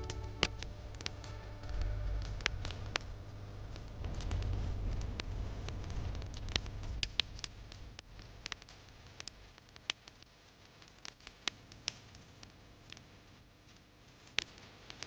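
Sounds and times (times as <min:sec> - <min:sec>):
low rumble: 0:00.0 - 0:08.5
wood fire crackling and popping: 0:00.0 - 0:15.0.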